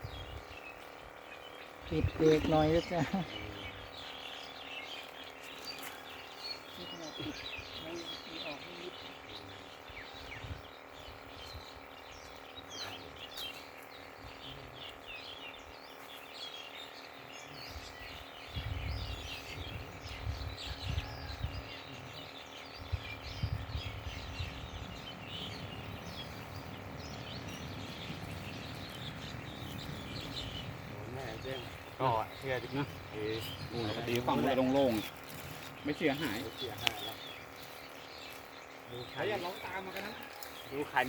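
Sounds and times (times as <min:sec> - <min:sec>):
small birds chirping: 0:00.0 - 0:41.0
low rumbling noise: 0:22.8 - 0:34.3.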